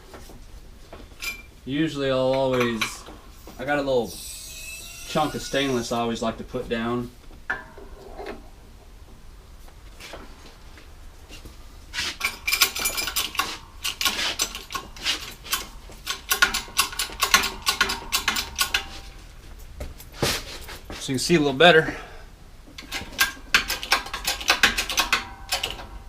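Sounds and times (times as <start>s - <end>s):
steel parts clanking: 1.1s - 1.5s, 2.3s - 6.0s, 12.0s - 19.3s.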